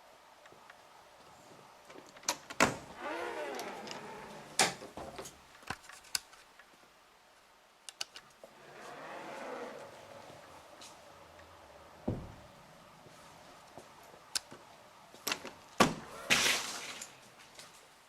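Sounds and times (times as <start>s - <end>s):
drawn-out creak: 2.9s - 4.8s, 8.5s - 10.8s.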